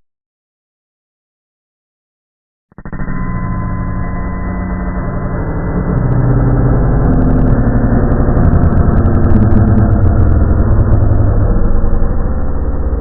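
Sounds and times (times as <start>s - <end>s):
low engine-like rumble pulsing: 3.5s - 13.0s.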